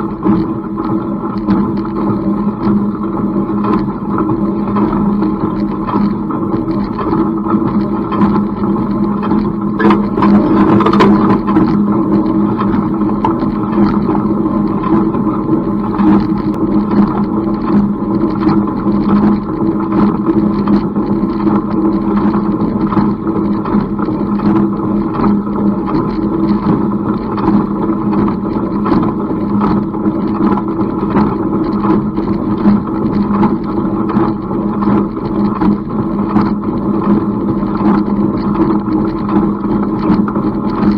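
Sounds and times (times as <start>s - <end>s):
tractor engine running: 7.8s - 17.4s
baler knocking: 9.8s - 11.4s.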